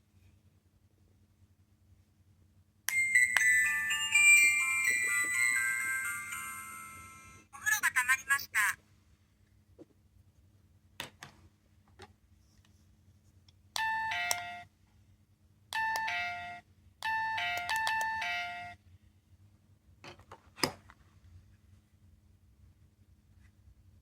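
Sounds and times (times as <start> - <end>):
two-tone doorbell chime: 2.9 - 7.4, 15.8 - 18.8.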